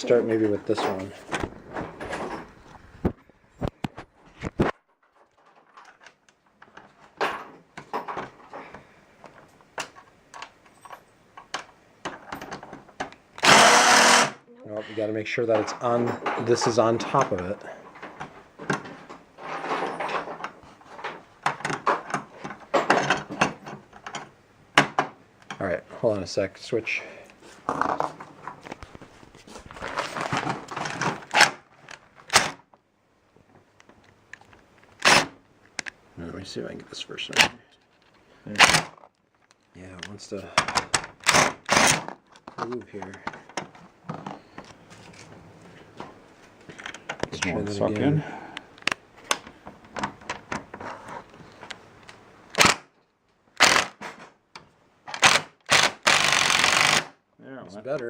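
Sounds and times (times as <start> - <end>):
tools and hardware handling noise: 0.0 - 14.3, 15.4 - 25.6, 27.3 - 32.6, 37.3 - 52.8
power driver bursts: 13.4 - 14.4, 55.2 - 57.1.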